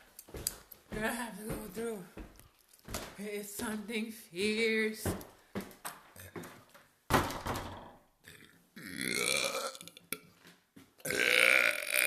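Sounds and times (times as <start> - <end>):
woman belching: 8.2 - 10.2, 11.0 - 12.0.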